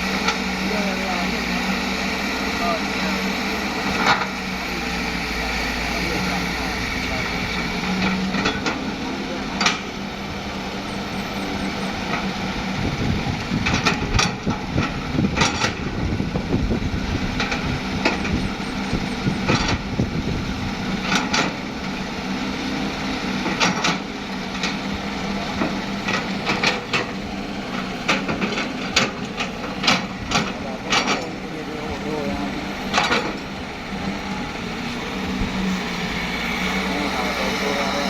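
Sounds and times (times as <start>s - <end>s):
diesel engine running: 0.0s - 38.0s.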